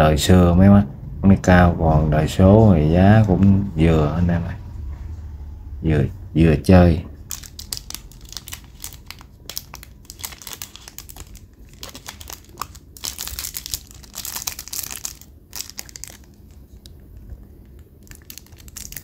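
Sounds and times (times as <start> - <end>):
packaging crinkling: 7.2 - 19.0.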